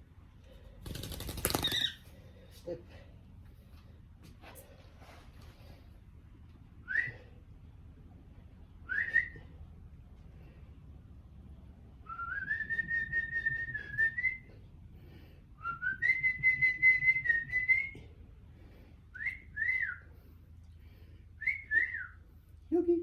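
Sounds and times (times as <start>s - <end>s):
person whistling: 6.8s - 7.3s, 8.9s - 9.4s, 12.1s - 14.5s, 15.6s - 18.1s, 19.2s - 20.1s, 21.4s - 22.2s.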